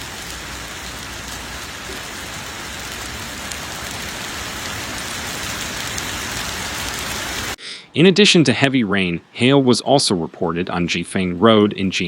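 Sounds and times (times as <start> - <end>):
heavy rain on hard surfaces: 0.0 - 7.6.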